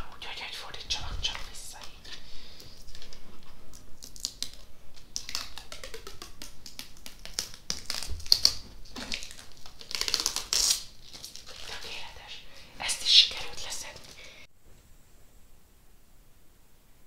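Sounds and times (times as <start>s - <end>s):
plastic film peeling crackles: 1.4s - 12.4s, 13.0s - 14.2s.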